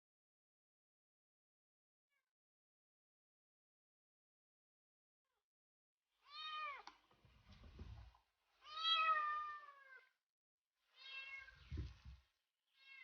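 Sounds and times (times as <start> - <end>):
cat meowing: 6.2 - 6.9, 8.6 - 10.1, 11.0 - 11.7, 12.8 - 13.0.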